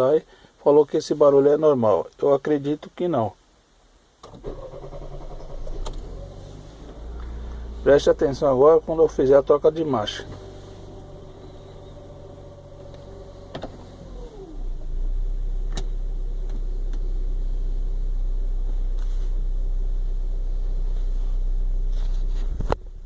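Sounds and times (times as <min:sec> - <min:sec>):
car engine idling: 0:04.4 - 0:23.0
gear shift click: 0:12.7 - 0:14.2.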